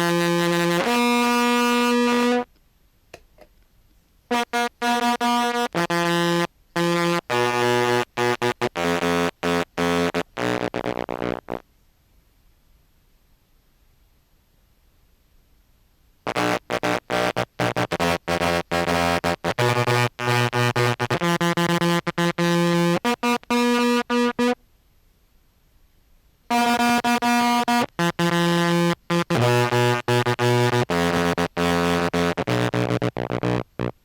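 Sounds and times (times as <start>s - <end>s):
contrabass clarinet with tremolo effect: 0.0s - 2.4s, 4.3s - 11.6s, 16.3s - 24.6s, 26.5s - 34.0s.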